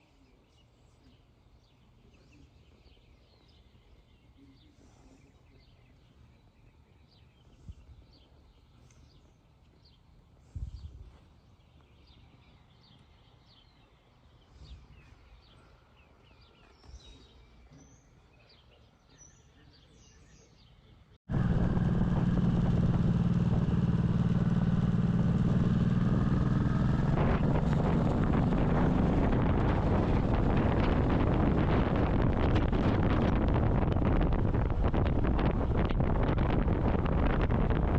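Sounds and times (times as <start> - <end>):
birds chirping faintly: 0.0 - 32.8
loud steady rumbling with hum: 21.3 - 37.9.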